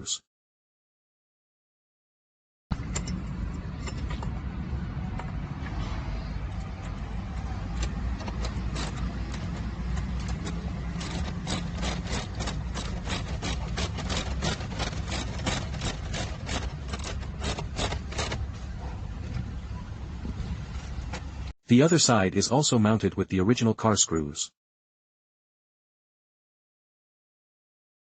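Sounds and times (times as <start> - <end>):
low engine-like rumble: 2.7 - 21.5.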